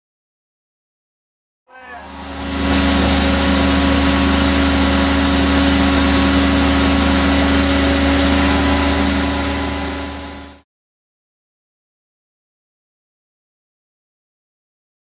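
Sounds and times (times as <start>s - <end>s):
gas turbine engine drone: 1.7s - 10.6s.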